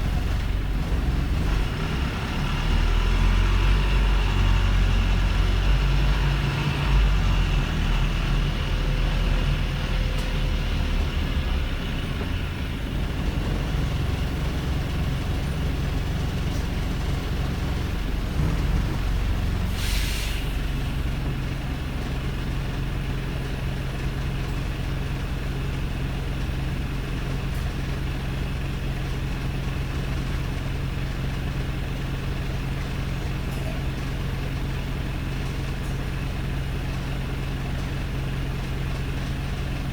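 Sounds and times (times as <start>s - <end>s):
diesel engine idling: 0.0s - 39.9s
air hiss: 19.7s - 20.6s.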